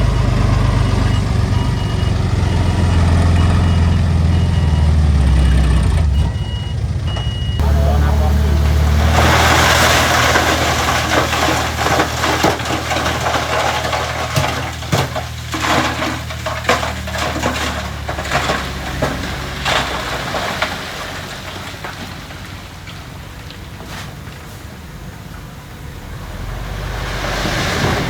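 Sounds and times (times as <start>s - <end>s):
diesel engine running: 0.0s - 28.0s
rocks pouring and clattering: 7.6s - 28.0s.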